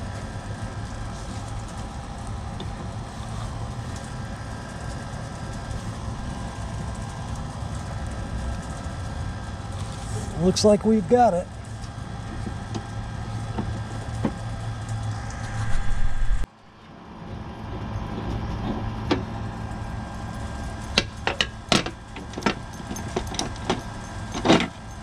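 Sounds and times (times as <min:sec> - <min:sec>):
steady low hum: 0:00.0 - 0:25.0
tools and metal parts clinking: 0:20.9 - 0:25.0.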